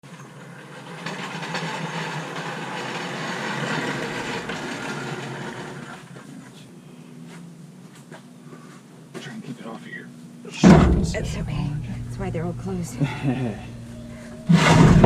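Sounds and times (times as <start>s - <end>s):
vehicle passing by: 10.8s - 15.0s.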